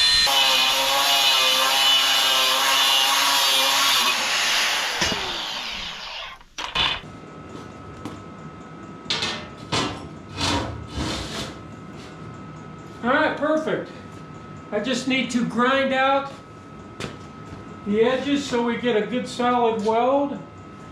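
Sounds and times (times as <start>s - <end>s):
power tool whining on steel: 0.0s - 7.0s.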